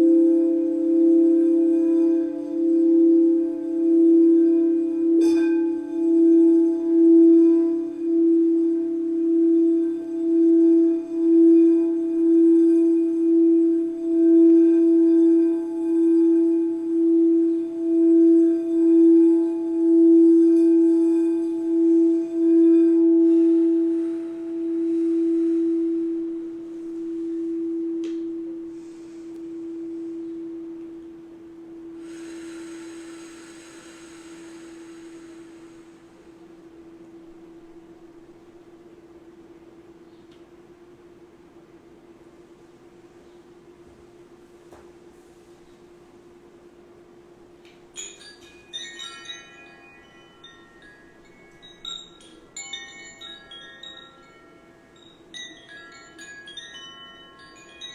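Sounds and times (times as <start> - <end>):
singing bowl ringing: 0.0 - 39.0, 44.8 - 57.9
high shimmer of bright tones: 32.0 - 36.5, 47.9 - 57.9.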